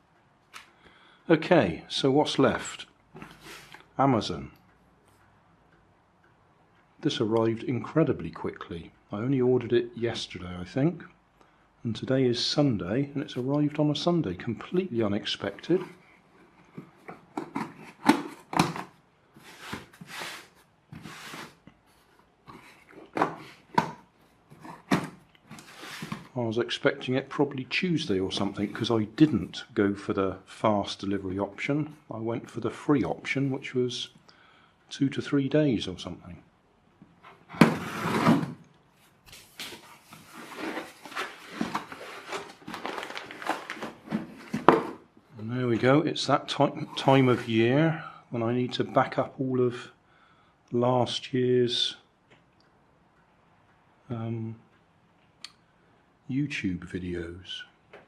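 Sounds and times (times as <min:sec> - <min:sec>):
packaging rustling and scraping: 0:15.4 - 0:26.3, 0:37.4 - 0:45.1
packaging rustling: 0:24.5 - 0:26.3, 0:39.0 - 0:45.0
cardboard parcel knocks and clicks: 0:40.5 - 0:45.0.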